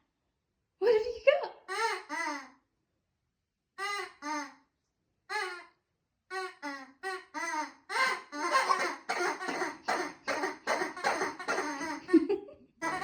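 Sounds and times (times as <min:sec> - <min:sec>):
person laughing: 0:08.4 - 0:13.0.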